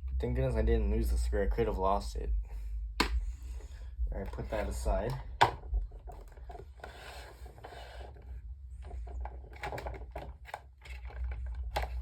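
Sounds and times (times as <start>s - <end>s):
plastic clicks and knocks: 4.2s - 6.9s, 8.8s - 12.0s.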